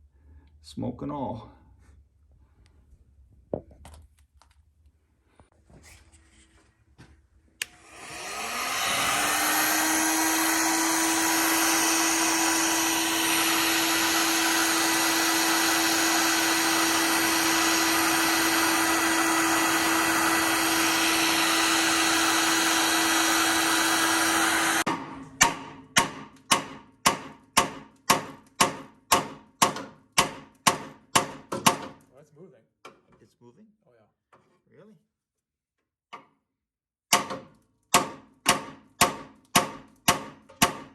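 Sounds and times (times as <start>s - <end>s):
power tool switch click: 7.6s - 7.8s
power tool motor whining: 7.6s - 24.9s.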